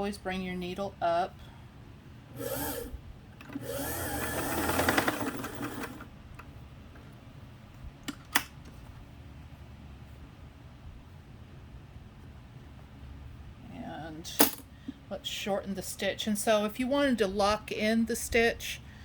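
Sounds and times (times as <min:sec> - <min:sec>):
sewing machine running: 0:02.3 - 0:06.1.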